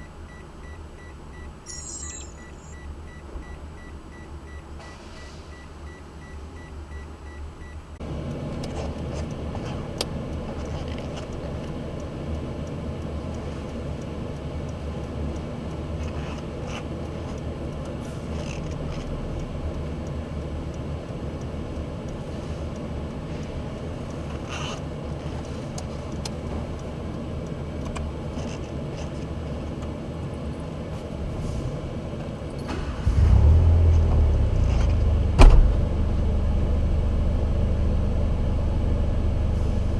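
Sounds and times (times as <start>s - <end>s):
car warning chime beeping: 0.0s - 7.9s
car engine starting and idling: 2.8s - 39.9s
deep rumble: 33.1s - 39.9s.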